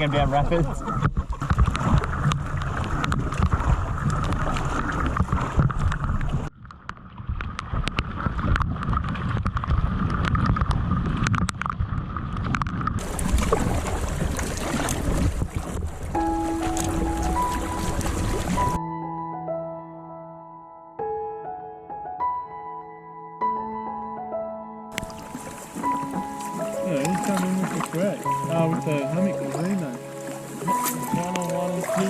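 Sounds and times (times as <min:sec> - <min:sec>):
water splashes: 0:00.0 - 0:18.8, 0:24.9 - 0:32.0
wind buffeting microphone: 0:00.0 - 0:18.8
rushing river water: 0:12.6 - 0:18.8, 0:24.9 - 0:32.0.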